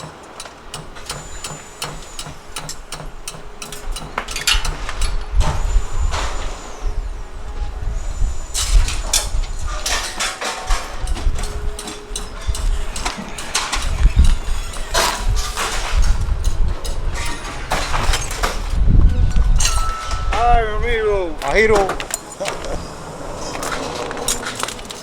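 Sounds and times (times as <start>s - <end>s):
sharp metal clanks: 0.0s - 6.9s, 8.6s - 20.5s
heavy machinery rumbling: 0.0s - 25.0s.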